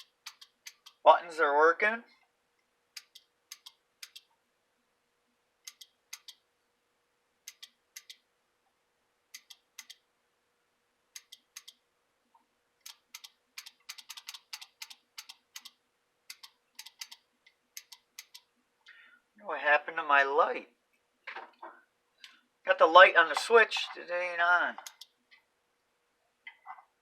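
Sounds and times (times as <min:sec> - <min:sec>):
control buttons clicking: 0:00.0 - 0:01.0, 0:03.0 - 0:04.3, 0:05.7 - 0:06.4, 0:12.8 - 0:17.2, 0:17.8 - 0:18.5, 0:24.7 - 0:25.2.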